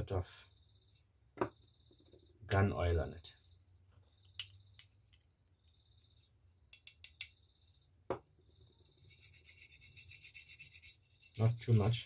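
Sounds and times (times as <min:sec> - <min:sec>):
small clicks and taps: 0:04.2 - 0:05.8, 0:06.7 - 0:07.4.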